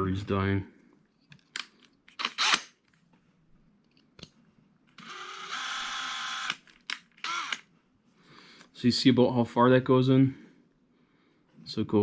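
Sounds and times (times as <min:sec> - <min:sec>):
cordless drill whining: 0:02.2 - 0:02.6, 0:05.0 - 0:06.6, 0:07.2 - 0:07.7.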